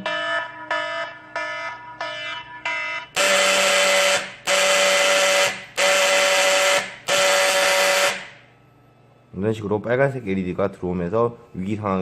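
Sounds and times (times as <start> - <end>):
fire alarm beeps: 0.0 - 8.4
harsh alarm blasts: 0.0 - 8.6.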